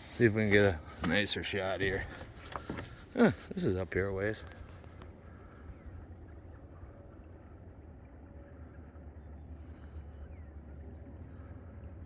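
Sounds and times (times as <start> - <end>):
steady low rumble: 3.9 - 12.0.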